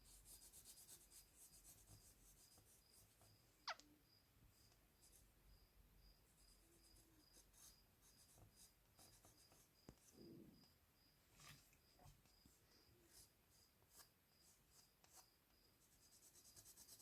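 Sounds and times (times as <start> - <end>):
drawing strokes scratching on paper: 0.0 - 3.4, 6.3 - 10.2, 13.1 - 17.0.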